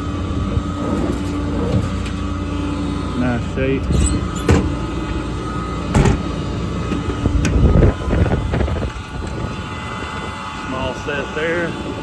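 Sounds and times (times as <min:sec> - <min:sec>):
metal compartment doors clicking: 0:03.8 - 0:04.8, 0:05.9 - 0:07.6
wind buffeting microphone: 0:06.2 - 0:12.0.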